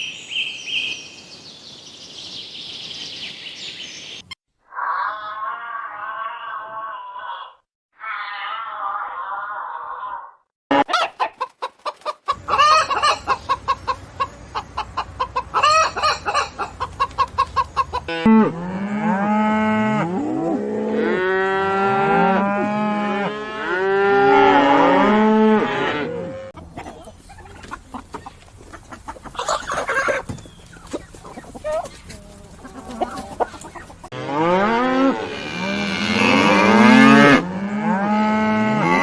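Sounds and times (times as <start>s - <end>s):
chickens clucking: 10.8s - 18.3s, 26.6s - 34.2s
cattle mooing: 18.1s - 26.5s, 34.1s - 39.0s.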